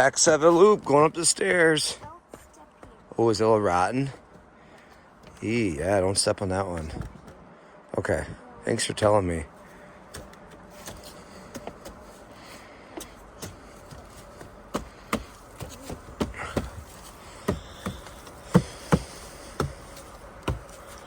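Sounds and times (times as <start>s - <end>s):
footsteps on wooden stairs: 1.9s - 3.1s, 10.1s - 12.3s, 12.9s - 21.0s.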